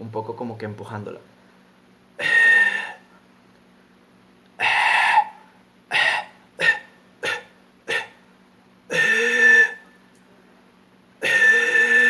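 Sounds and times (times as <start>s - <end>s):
forced coughs: 5.9s - 8.2s.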